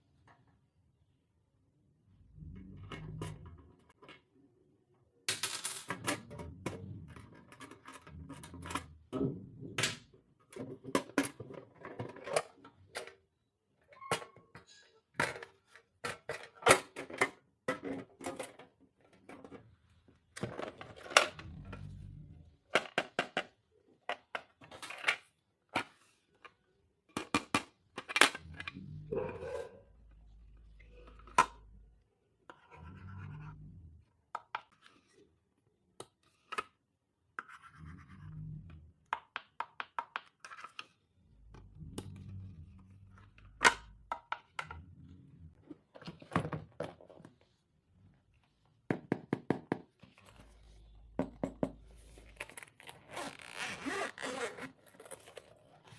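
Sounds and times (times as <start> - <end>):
plastic items clicking and knocking: 5.3 - 8.9, 22.7 - 28.7, 39.1 - 41.0.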